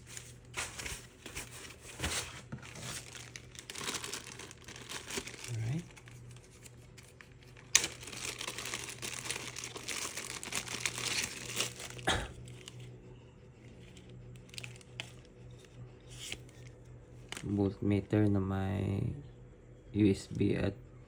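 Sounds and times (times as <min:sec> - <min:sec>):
plastic packaging crinkling: 0:00.0 - 0:13.0, 0:13.8 - 0:15.5, 0:16.1 - 0:17.5.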